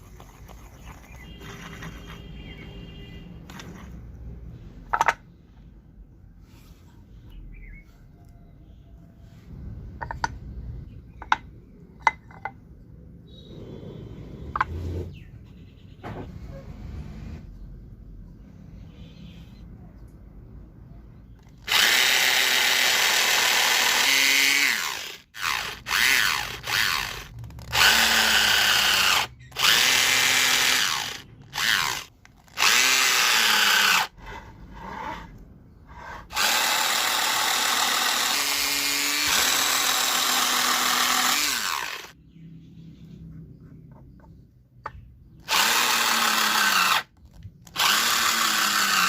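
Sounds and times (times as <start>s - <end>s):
electric drill running in bursts: 21.6s - 34.1s, 36.3s - 42.2s, 45.5s - 47.1s, 47.7s - 49.0s.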